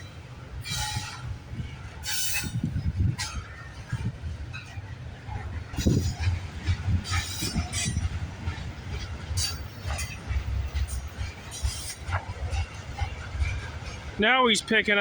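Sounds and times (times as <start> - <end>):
freight train cars rumbling past: 0.0 - 15.0
wheels and couplers clunking: 0.6 - 14.7
wheel screeches: 2.0 - 4.8.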